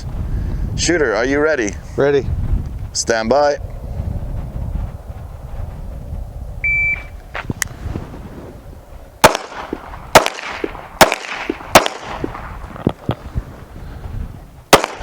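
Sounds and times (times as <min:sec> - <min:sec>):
shot timer beep: 0:06.6 - 0:07.1
pistol shots with echo: 0:09.2 - 0:12.6, 0:14.7 - 0:15.0.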